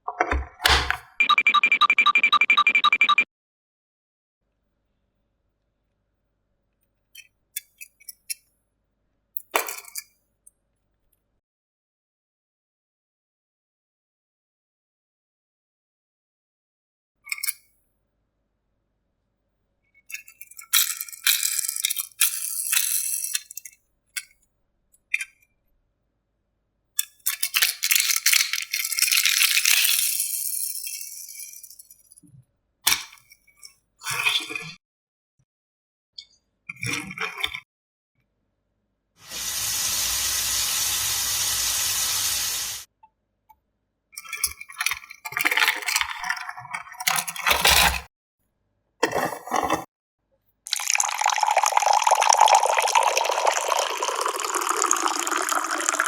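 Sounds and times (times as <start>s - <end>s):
toy cars rattling and clinking: 20.2s - 23.8s, 27.2s - 32.2s
steady hiss: 39.3s - 42.8s.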